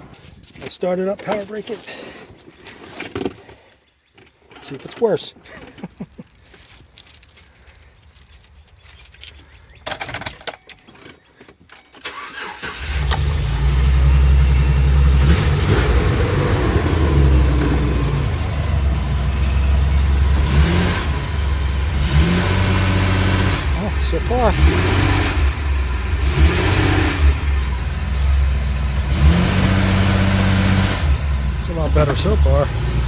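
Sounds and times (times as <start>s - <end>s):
van engine starting and running: 12.0s - 33.0s.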